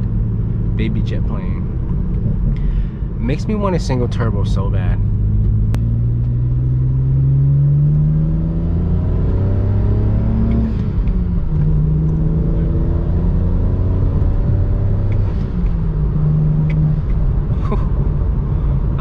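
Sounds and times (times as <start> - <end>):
car engine accelerating hard: 0.0 - 19.0.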